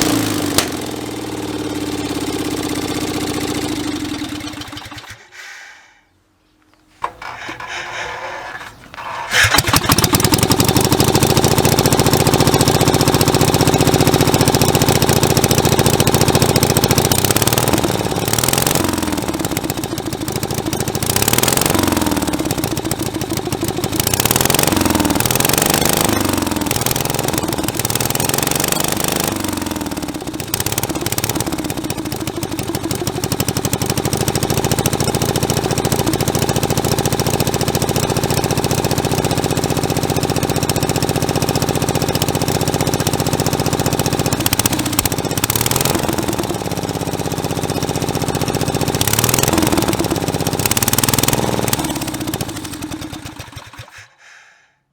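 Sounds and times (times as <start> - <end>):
small engine running: 0.0 - 5.9, 7.0 - 54.8.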